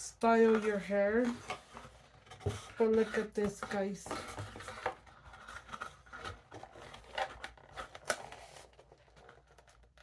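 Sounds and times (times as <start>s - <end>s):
packaging rustling: 3.5s - 10.0s.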